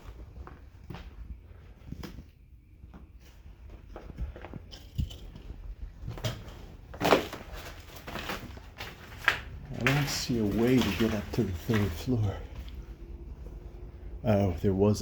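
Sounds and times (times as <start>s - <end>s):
footsteps crunching over debris: 0.0s - 13.1s.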